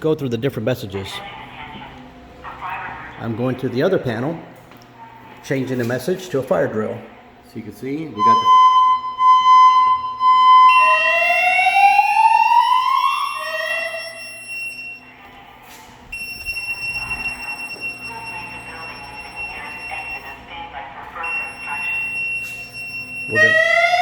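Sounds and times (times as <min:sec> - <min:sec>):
fire alarm alert tones: 0:08.2 - 0:15.4, 0:16.1 - 0:24.0.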